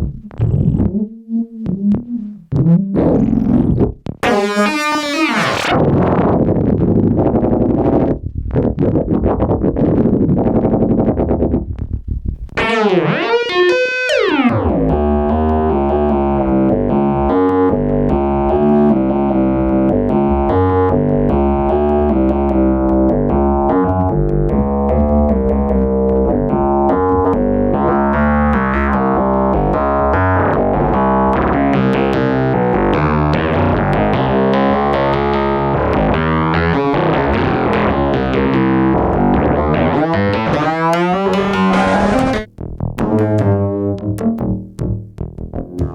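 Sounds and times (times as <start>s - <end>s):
analog synthesizer playing: 0.0s - 5.8s, 12.6s - 24.5s, 26.3s - 43.5s.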